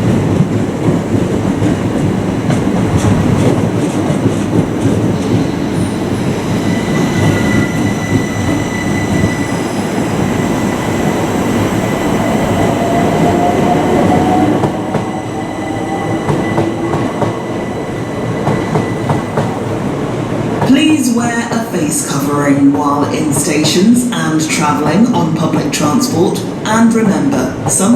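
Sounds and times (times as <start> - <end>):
train wheels rumbling on rails: 0.0 - 27.9.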